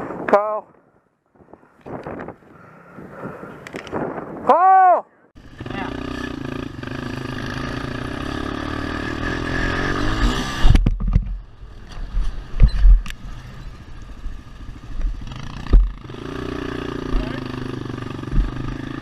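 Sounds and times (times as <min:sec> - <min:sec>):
atv engine running: 0:05.4 - 0:19.0.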